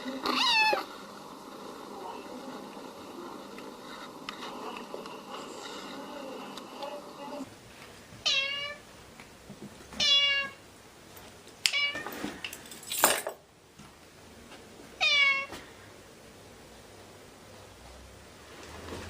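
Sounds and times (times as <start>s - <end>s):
cat meowing: 0.2s - 0.9s, 8.2s - 8.8s, 10.0s - 10.6s, 15.0s - 15.5s.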